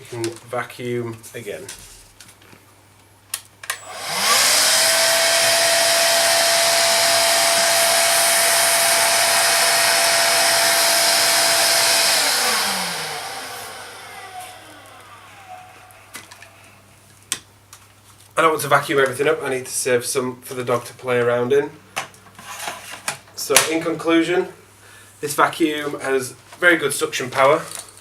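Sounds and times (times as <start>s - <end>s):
vacuum cleaner motor whining: 3.7s - 16.7s.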